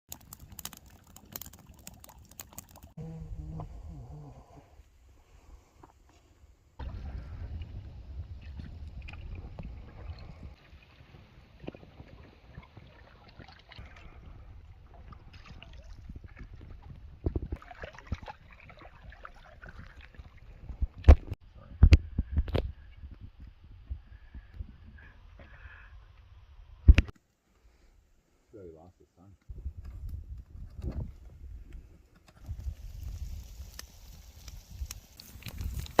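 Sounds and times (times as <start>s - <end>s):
paddle splashing water: 8.4s - 14.2s, 14.9s - 16.9s, 17.6s - 20.6s.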